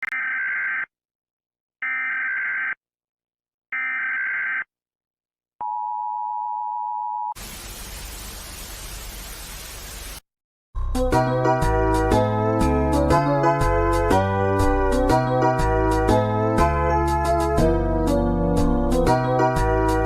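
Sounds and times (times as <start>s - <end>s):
static hiss: 7.4s - 10.2s.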